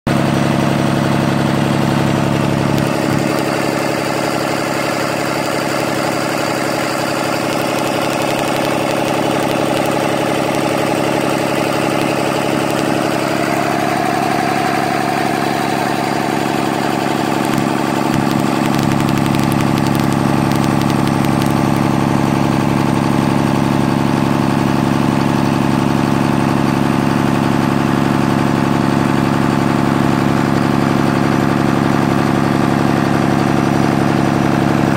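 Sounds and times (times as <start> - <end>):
diesel engine idling: 0.1 - 34.9.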